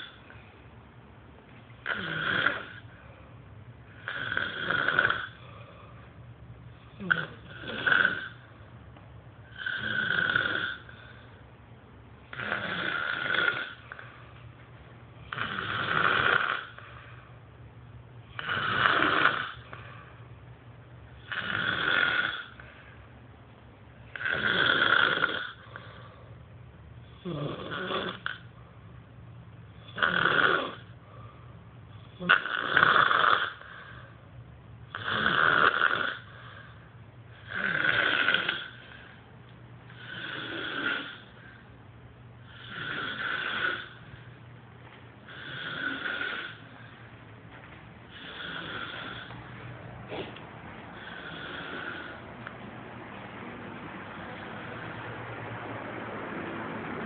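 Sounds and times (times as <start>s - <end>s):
man snoring heavily: 1.8s - 2.9s, 4.0s - 5.5s, 7.0s - 8.4s, 9.5s - 11.2s, 12.3s - 14.0s, 15.2s - 16.8s, 18.3s - 19.8s, 21.2s - 22.7s, 24.1s - 26.1s, 27.2s - 28.5s, 29.8s - 30.9s, 32.1s - 34.1s, 34.9s - 36.6s, 37.4s - 39.1s, 39.9s - 41.5s, 42.4s - 44.1s, 45.2s - 46.9s, 48.1s - 49.4s, 50.9s - 52.3s.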